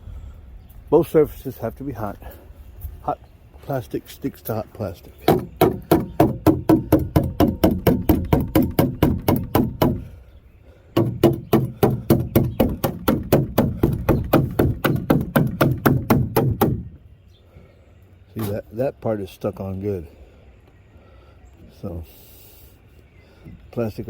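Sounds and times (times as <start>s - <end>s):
tool striking plastic: 5.2s - 10.1s, 11.0s - 17.0s.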